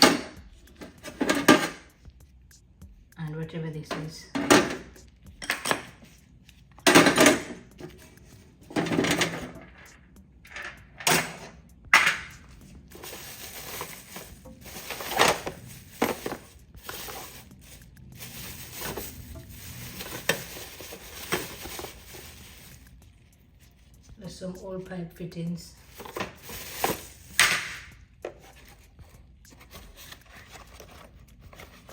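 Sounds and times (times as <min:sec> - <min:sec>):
metal tools clinking: 0:03.9 - 0:06.1.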